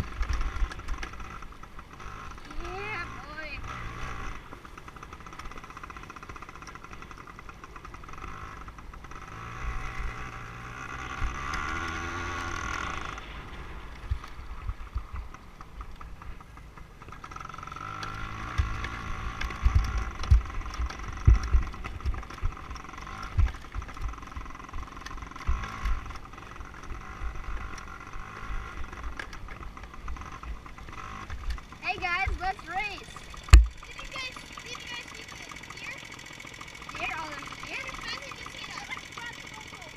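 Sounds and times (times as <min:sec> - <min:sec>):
dirt bike engine revving: 0:00.0 - 0:39.9
low thumps: 0:33.2 - 0:33.9.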